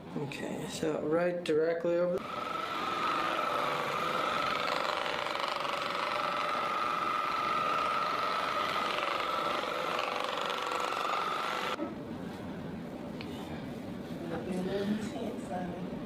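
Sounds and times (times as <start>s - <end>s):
electric massager buzzing: 2.2s - 11.8s.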